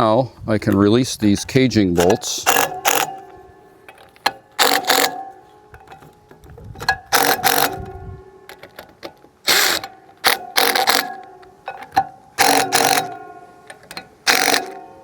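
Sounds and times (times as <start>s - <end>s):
faint metallic ringing: 1.6s - 15.0s
ratchet wrench clicking: 2.0s - 3.2s, 4.6s - 5.2s, 6.8s - 7.9s, 9.5s - 11.2s, 11.8s - 15.0s.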